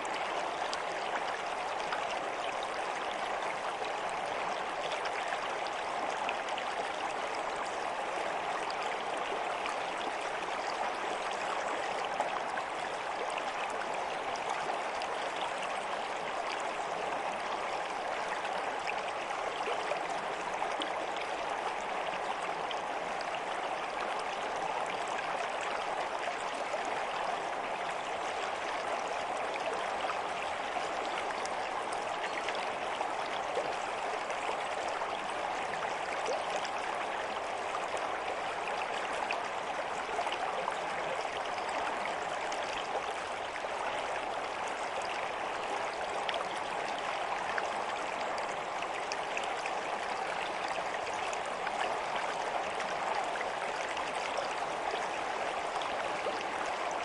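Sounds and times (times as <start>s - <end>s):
stream of running water: 0.0s - 57.0s.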